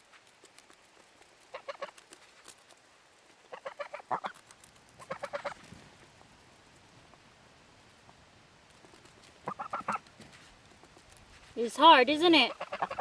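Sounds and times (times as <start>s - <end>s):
geese clucking calls: 1.5s - 2.0s, 3.4s - 4.4s, 5.0s - 5.6s, 9.4s - 10.1s, 12.3s - 13.0s.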